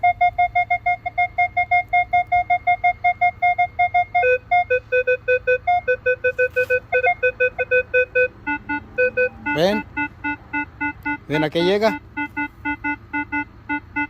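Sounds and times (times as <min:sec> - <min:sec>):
metal detector beeping: 0:00.0 - 0:14.0.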